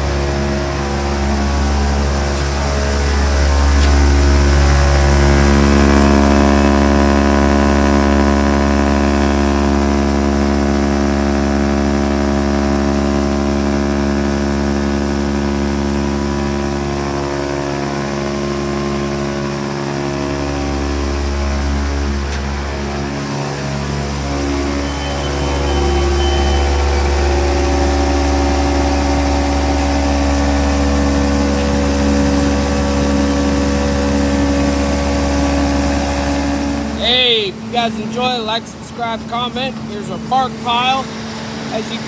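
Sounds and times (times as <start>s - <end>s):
machinery droning: 0.0s - 42.0s
pitched ringing tone: 24.1s - 42.0s.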